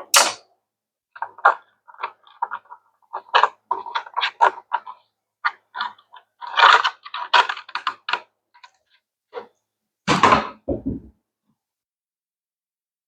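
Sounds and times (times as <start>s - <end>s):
plastic parts clicking and knocking: 1.1s - 9.5s
plastic clatter: 1.2s - 9.5s.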